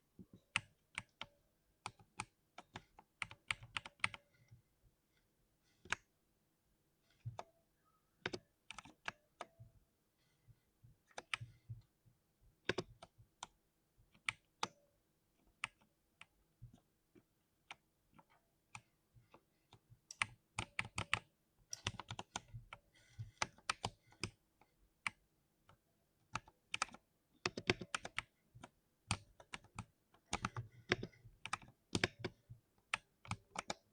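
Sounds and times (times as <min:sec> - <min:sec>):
mechanical keyboard typing: 0:00.6 - 0:04.2, 0:12.7 - 0:13.1, 0:20.1 - 0:22.5, 0:26.3 - 0:33.9.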